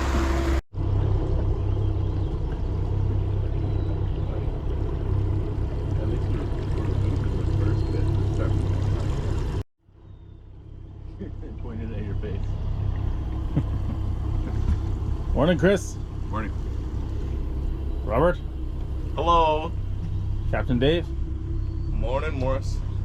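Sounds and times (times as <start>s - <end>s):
water rushing past: 0.0s - 0.6s, 4.6s - 9.6s
boat motor running: 0.0s - 23.0s.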